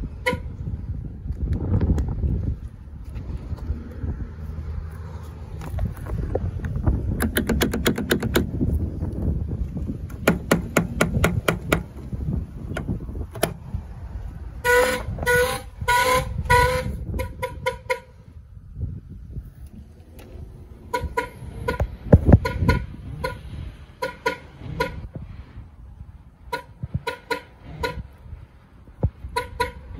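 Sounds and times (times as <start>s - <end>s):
car horn honking in rapid pulses: 0.0s - 0.8s, 14.5s - 18.4s, 20.8s - 25.2s, 26.4s - 28.4s, 29.0s - 29.9s
fast clicking bursts: 7.2s - 8.5s.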